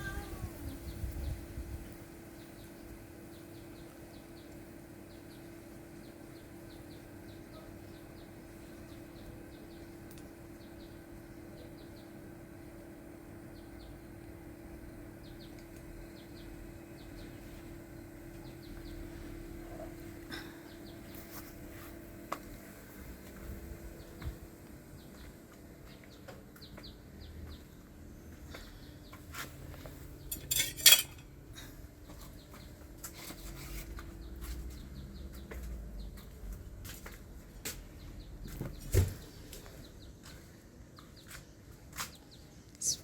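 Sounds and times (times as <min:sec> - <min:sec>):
low steady hum: 0:00.0 - 0:34.4
hard objects clattering: 0:30.3 - 0:31.2
small bird chirping: 0:42.0 - 0:43.0.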